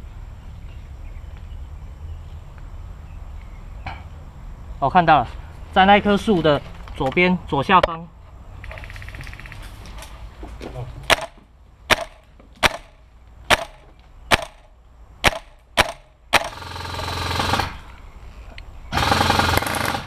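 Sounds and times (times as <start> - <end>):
airsoft gun single shots: 11.1 - 16.5
airsoft gun full-auto bursts: 15.2 - 17.9, 18.9 - 20.0.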